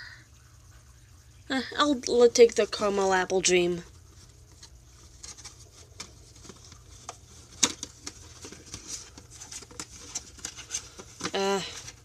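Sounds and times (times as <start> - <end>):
rustling of tea packets: 3.7 - 12.0.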